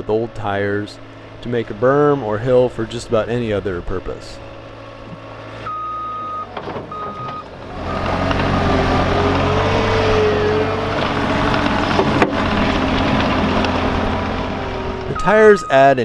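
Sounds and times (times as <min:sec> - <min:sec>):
diesel engine running under load: 0:00.0 - 0:16.0
reversing alarm beeps: 0:05.7 - 0:08.1, 0:15.2 - 0:15.9.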